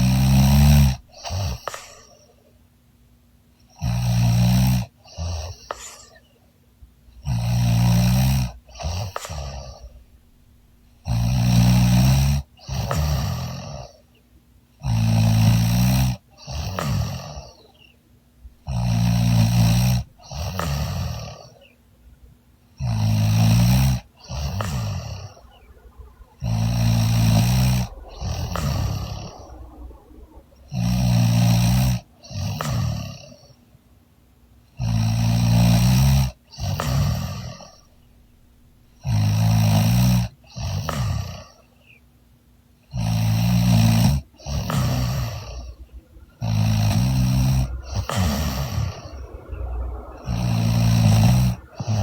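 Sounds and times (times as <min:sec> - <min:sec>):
woman snoring loudly: 0:00.0 - 0:02.2, 0:03.8 - 0:06.2, 0:07.2 - 0:09.9, 0:11.0 - 0:14.0, 0:14.8 - 0:17.8, 0:18.7 - 0:21.6, 0:22.8 - 0:33.5, 0:34.8 - 0:37.9, 0:39.0 - 0:41.5, 0:42.9 - 0:52.0.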